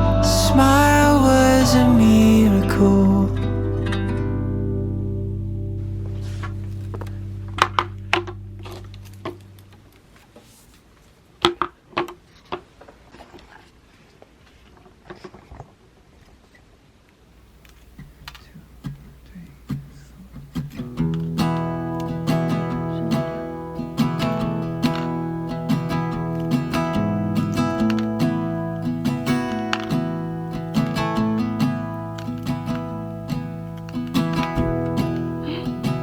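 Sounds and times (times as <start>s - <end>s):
background song: 0.0s - 5.6s
acoustic guitar music: 0.0s - 10.2s, 17.8s - 36.0s.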